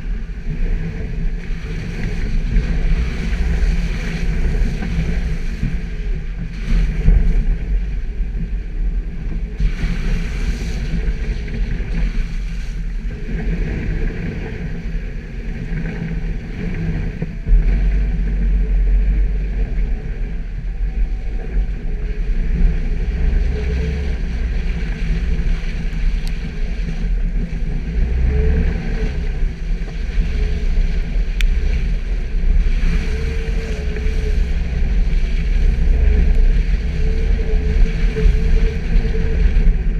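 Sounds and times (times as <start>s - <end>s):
vehicle engine rumbling: 0.0s - 39.9s.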